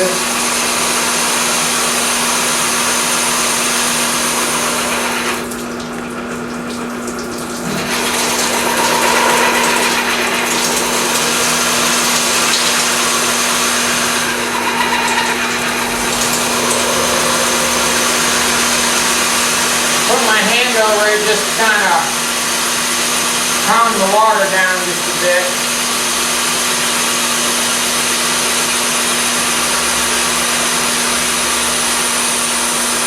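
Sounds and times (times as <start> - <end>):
water splashing: 5.4 - 22.6
motor hum: 7.0 - 23.8.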